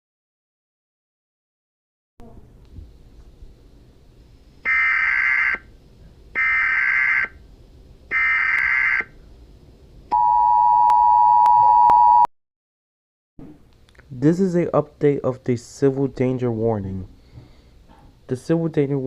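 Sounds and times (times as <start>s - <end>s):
two-tone attention signal: 10.1s - 12.3s.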